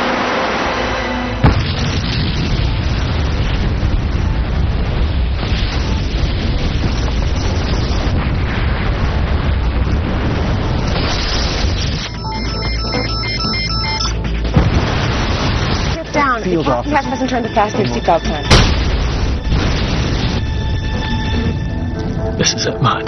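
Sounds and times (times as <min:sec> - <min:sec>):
sudden blast: 0:00.0 - 0:12.0, 0:18.5 - 0:21.2
heavy deep rumble: 0:00.0 - 0:13.4, 0:14.2 - 0:23.0.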